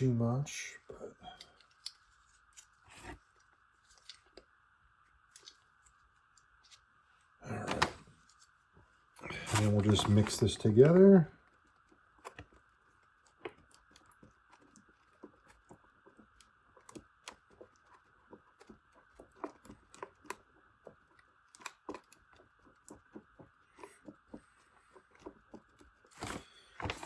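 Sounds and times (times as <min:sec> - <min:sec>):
epoxy mixing clicks and scrapes: 0:09.2 - 0:27.0.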